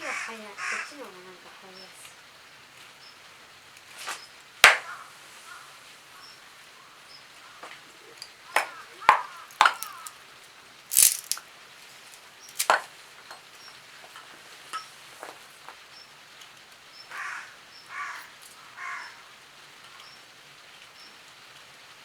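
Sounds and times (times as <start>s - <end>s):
firewood cracking: 7.6s - 10.2s, 10.8s - 13.4s.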